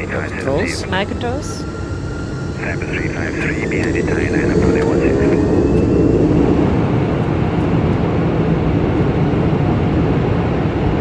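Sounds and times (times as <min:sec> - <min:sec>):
jet engines spooling up: 0:00.0 - 0:09.8.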